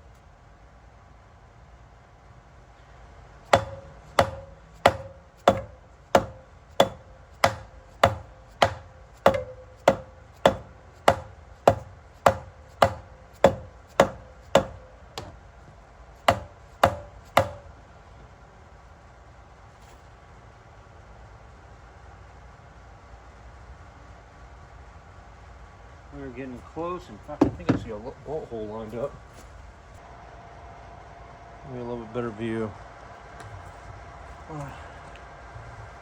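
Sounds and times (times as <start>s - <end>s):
hammer striking metal: 3.5s - 15.4s, 16.3s - 17.7s.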